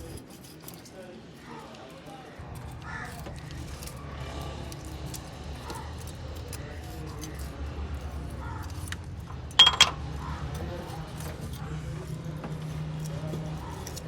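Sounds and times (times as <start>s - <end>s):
ringing metallic clang: 9.6s - 10.0s
metal hand tools clinking: 9.6s - 10.1s.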